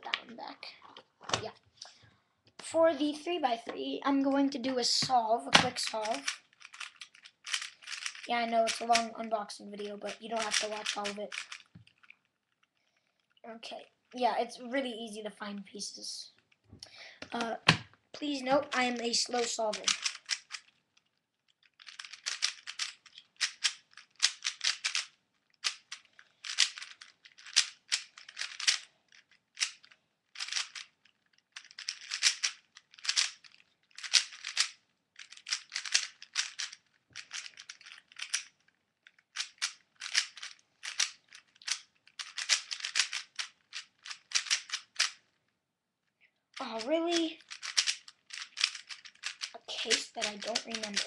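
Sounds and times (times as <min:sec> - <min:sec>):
puzzle cube plastic clicking: 0:04.6 - 0:09.2, 0:09.8 - 0:12.7, 0:17.2 - 0:45.4, 0:46.6 - 0:51.0.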